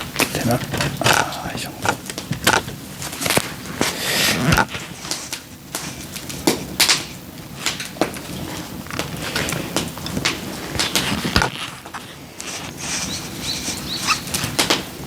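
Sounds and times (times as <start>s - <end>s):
scraping rustle: 7.5s - 15.0s.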